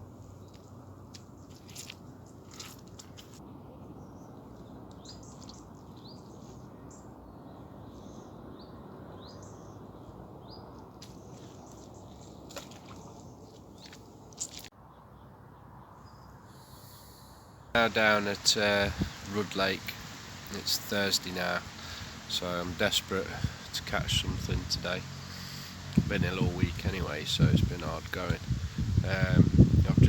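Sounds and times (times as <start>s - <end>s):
bird chirping: 3.8s - 16.4s.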